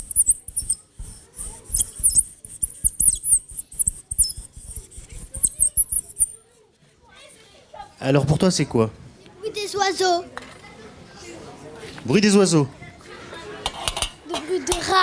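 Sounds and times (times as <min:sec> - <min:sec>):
polystyrene squeaking on glass: 0:00.0 - 0:06.4.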